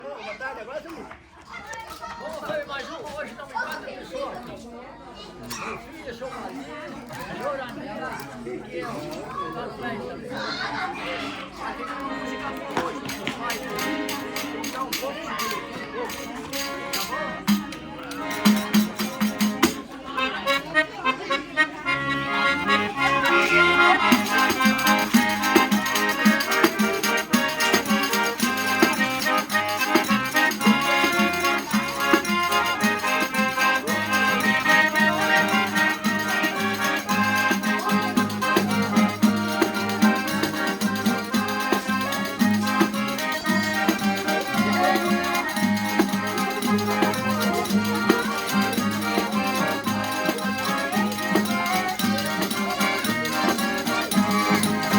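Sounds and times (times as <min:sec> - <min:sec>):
accordion dance tune: 0:11.9 - 0:54.9.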